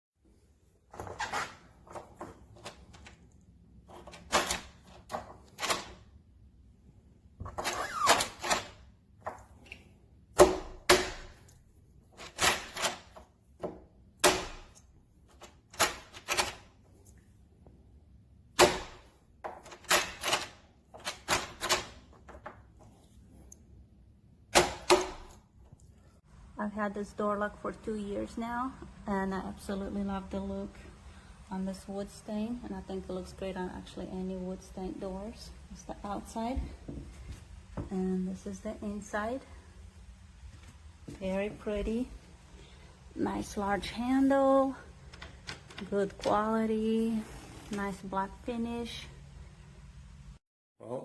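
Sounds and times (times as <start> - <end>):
metal lock clicks and clunks: 3.9 - 6.0, 12.2 - 13.2, 14.2 - 16.7, 18.6 - 22.4, 24.5 - 25.4.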